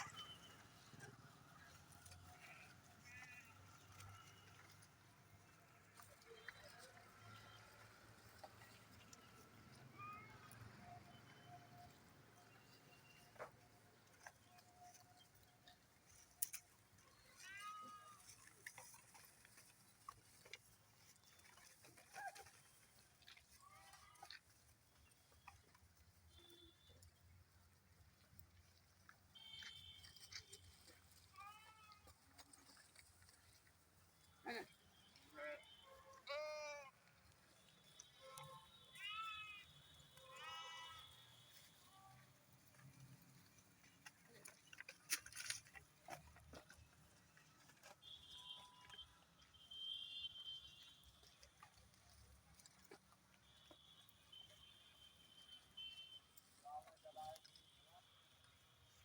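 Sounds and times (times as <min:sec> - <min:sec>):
sheep bleating: 0:02.2 - 0:04.0, 0:35.3 - 0:37.0, 0:40.3 - 0:41.2.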